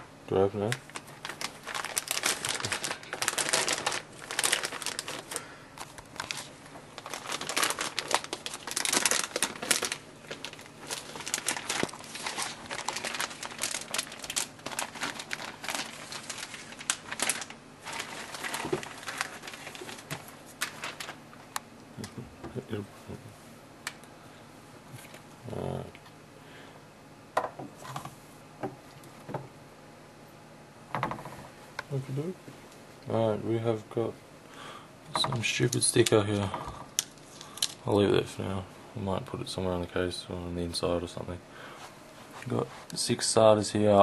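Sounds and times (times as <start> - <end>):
plastic packaging crinkling: 0.6 - 21.3, 35.4 - 38.0.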